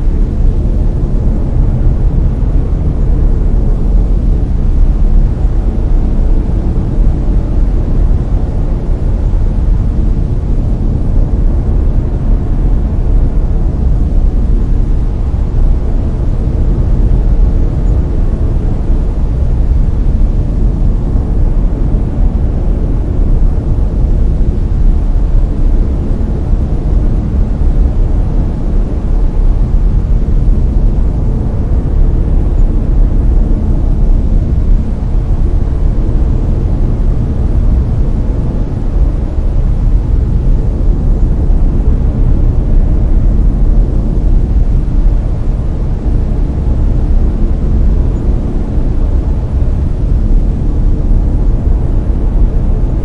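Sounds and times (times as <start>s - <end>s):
brown noise rumbling hiss: 0.0s - 53.0s.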